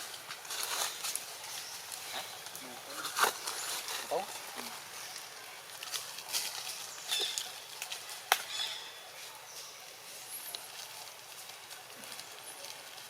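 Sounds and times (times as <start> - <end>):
sharp crack: 8.3 - 8.6.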